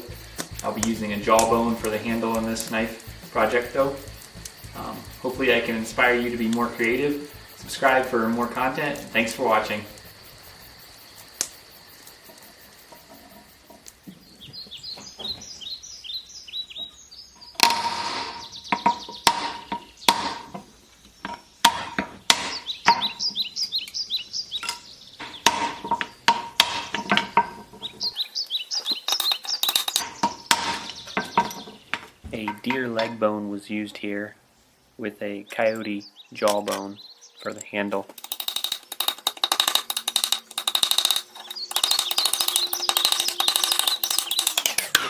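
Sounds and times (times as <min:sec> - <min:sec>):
small birds chirping: 0:00.0 - 0:45.0
sharp knocks and strikes: 0:17.6 - 0:20.6, 0:21.2 - 0:23.2, 0:25.2 - 0:27.9, 0:29.0 - 0:32.8.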